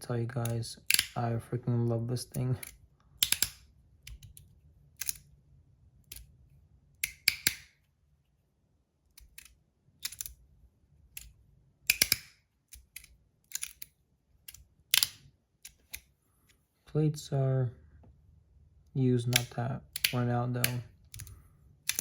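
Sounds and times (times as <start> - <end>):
sharp metal clicks of fidget: 0.4 - 1.2, 2.3 - 5.3, 7.0 - 7.8, 9.1 - 10.4, 11.9 - 16.1, 19.3 - 22.0.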